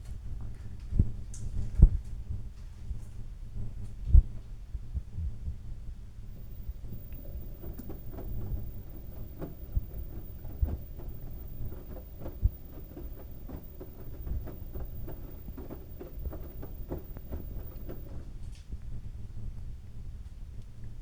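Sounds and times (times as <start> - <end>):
sharp thumps in washing machine: 6.3 - 18.2
washing machine drum rumbling: 6.3 - 18.2
soft knocks of tumbling load: 6.3 - 18.3.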